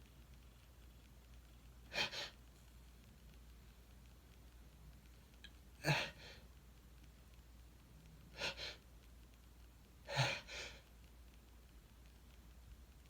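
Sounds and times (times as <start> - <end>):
man gasping breaths: 5.8 - 6.4, 8.4 - 8.8, 10.1 - 10.9.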